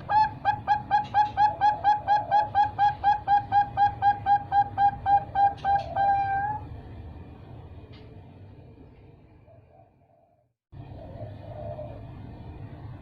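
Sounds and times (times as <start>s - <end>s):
dove cooing: 0.0s - 6.7s, 9.5s - 12.2s.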